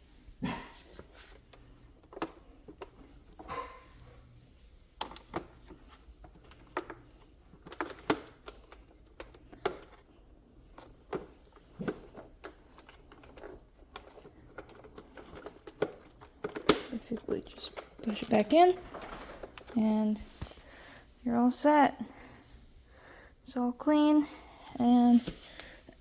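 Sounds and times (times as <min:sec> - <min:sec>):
plastic clicks and knocks: 0:05.0 - 0:10.1, 0:10.7 - 0:19.8.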